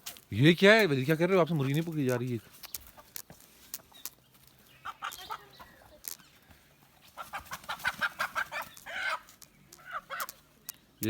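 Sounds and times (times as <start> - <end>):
hen clucking: 0.8 - 11.0.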